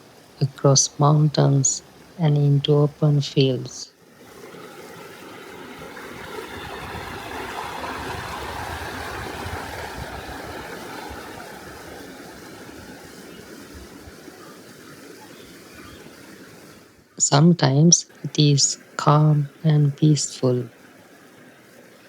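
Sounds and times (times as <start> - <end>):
river water rushing: 1.8 - 2.2, 4.0 - 17.1, 20.7 - 22.0.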